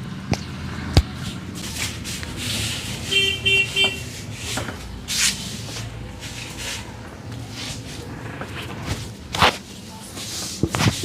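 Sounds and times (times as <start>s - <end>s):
hands rubbing hair and skin: 1.2s - 3.2s, 3.9s - 8.1s
vehicle horn tooting: 3.0s - 4.5s.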